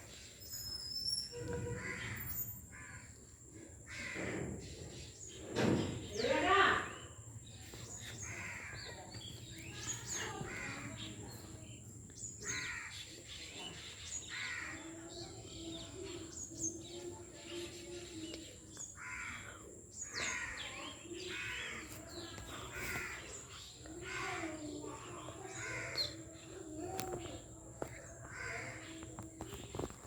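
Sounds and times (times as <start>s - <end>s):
crows cawing: 3.9s - 4.5s, 8.2s - 9.0s, 12.4s - 13.0s, 19.0s - 26.4s, 27.9s - 29.2s.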